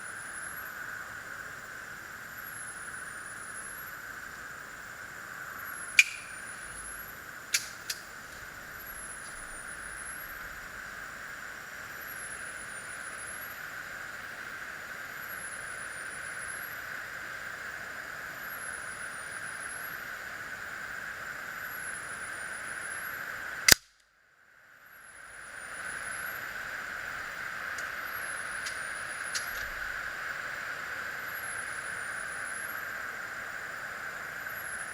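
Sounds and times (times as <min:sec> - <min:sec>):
steady hiss: 0:00.0 - 0:23.8, 0:24.4 - 0:34.9
air pistol shot crack: 0:06.0 - 0:06.5.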